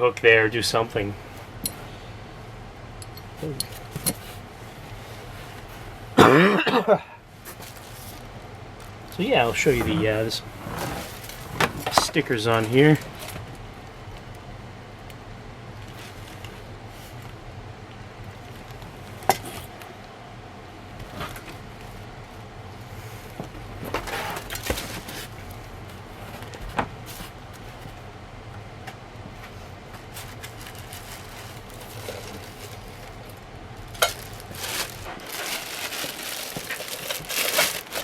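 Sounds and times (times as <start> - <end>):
steady low hum: 0.0 - 38.0
packaging rustling: 7.4 - 12.2, 30.1 - 38.0.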